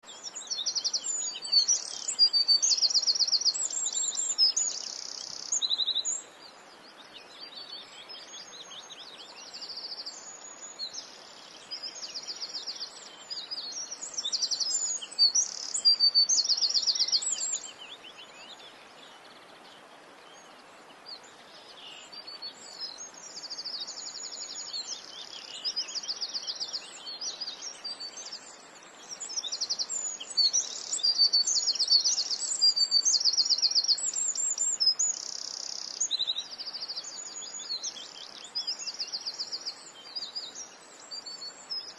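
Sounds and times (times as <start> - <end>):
faint steady hiss: 0.0 - 41.9
songbirds singing and chirping: 0.0 - 41.9.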